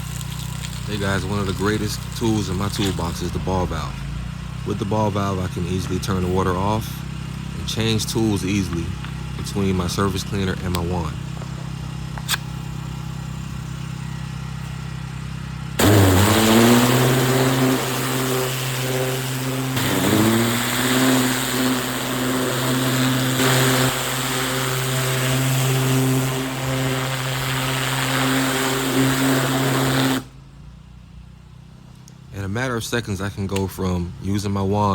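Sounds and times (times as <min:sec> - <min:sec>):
high-pressure water spraying hiss: 0:00.0 - 0:03.4, 0:15.8 - 0:30.3
pressure washer engine hum: 0:00.0 - 0:32.3.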